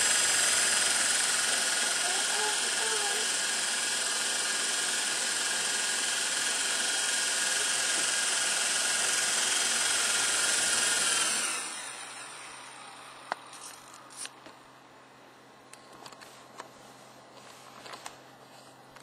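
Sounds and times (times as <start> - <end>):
model helicopter rotors whining: 0.0 - 14.3.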